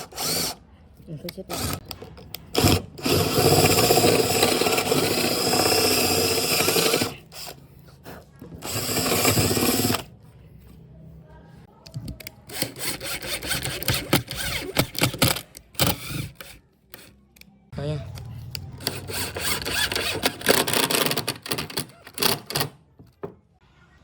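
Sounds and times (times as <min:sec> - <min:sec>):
power drill running: 0:00.0 - 0:00.6, 0:02.6 - 0:07.6, 0:08.6 - 0:10.1, 0:12.5 - 0:17.1, 0:18.8 - 0:20.5.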